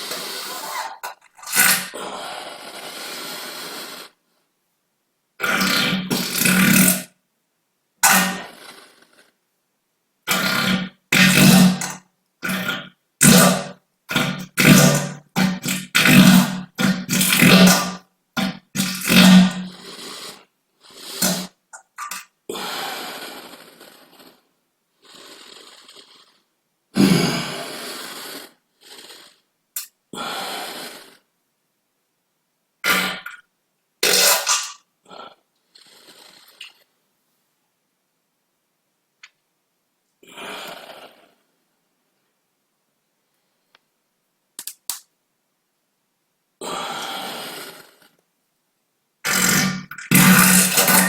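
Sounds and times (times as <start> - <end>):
person farting: 0.0 - 2.2, 5.4 - 7.2, 8.0 - 8.6, 10.3 - 20.4, 21.0 - 22.4, 27.0 - 27.9, 32.8 - 35.3, 49.2 - 51.0.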